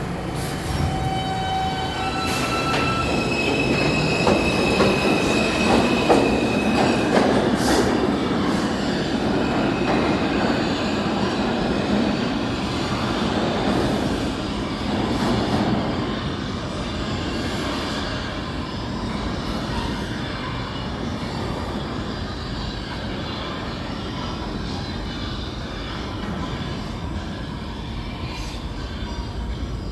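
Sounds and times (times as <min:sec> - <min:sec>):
subway wheels rumbling on rail: 0:00.0 - 0:29.9
high wheel squeal: 0:00.4 - 0:23.6.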